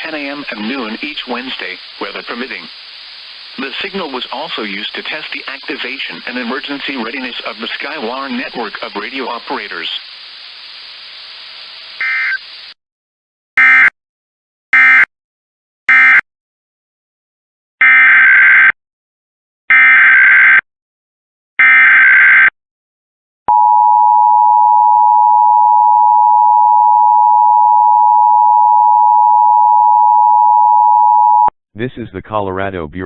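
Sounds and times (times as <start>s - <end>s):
data bursts: 0.0s - 10.0s, 12.0s - 12.5s.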